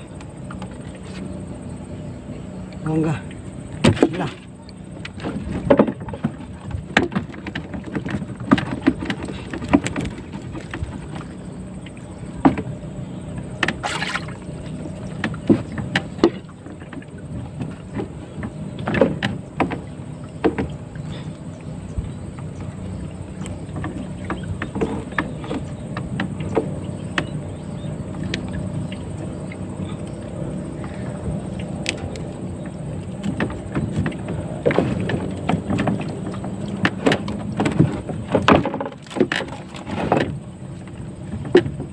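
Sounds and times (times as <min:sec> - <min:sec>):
boat motor running: 0:00.0 - 0:41.9
knocks and clunks: 0:03.8 - 0:11.4, 0:15.0 - 0:27.6, 0:30.8 - 0:40.4, 0:41.2 - 0:41.9.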